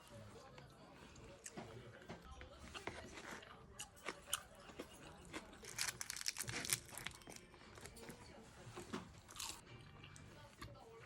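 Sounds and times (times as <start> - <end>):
food packaging crinkling and tearing: 5.3 - 8.0.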